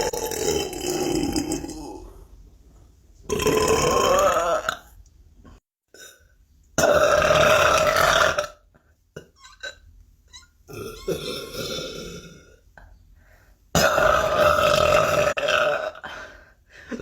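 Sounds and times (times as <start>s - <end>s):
person burping: 0.0s - 2.1s, 3.3s - 4.9s, 5.9s - 8.6s, 10.7s - 12.6s, 13.8s - 16.3s.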